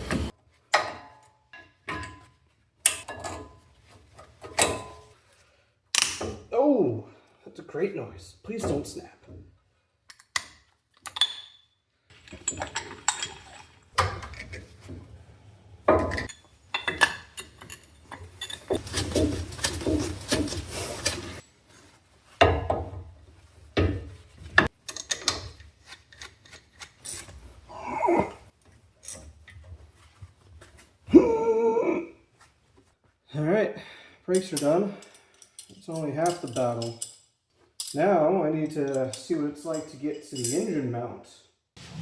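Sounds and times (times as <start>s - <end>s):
metal tools knocking and clanking: 0.1s - 2.3s, 11.1s - 15.1s, 15.9s - 21.4s, 23.8s - 25.7s.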